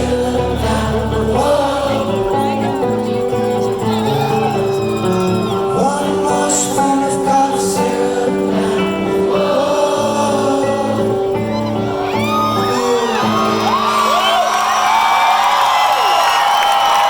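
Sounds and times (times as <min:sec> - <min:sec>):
live rock band and singer: 0:00.0 - 0:14.2
audience whooping and cheering: 0:03.6 - 0:05.9, 0:11.4 - 0:17.0.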